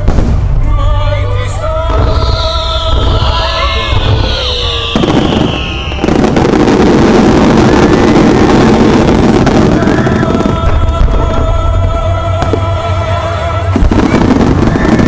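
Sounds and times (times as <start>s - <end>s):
fireworks crackling and banging: 0.0s - 15.0s
firework whistles: 2.0s - 10.4s, 13.7s - 15.0s.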